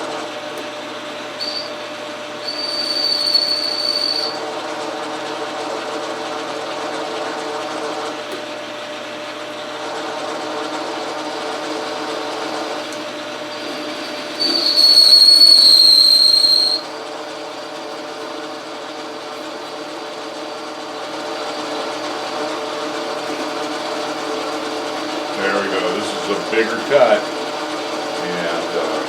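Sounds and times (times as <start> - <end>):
metal lathe whining: 0.0 - 29.0
loud high-pitched squeal: 1.4 - 1.8, 2.4 - 4.4, 13.5 - 17.1.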